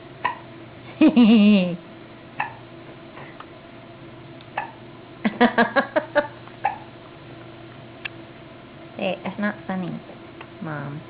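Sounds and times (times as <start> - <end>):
girl laughing: 0.9 - 1.8, 5.2 - 6.4.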